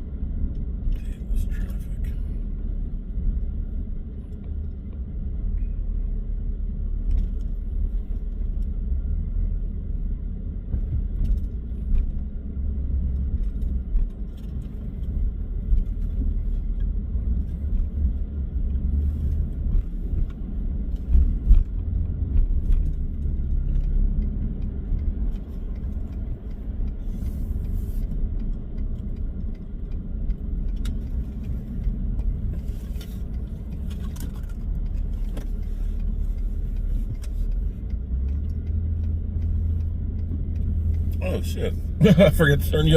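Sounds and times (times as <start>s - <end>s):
car road and engine rumble: 0.0s - 42.9s
faint clicks and rattles: 10.8s - 42.0s.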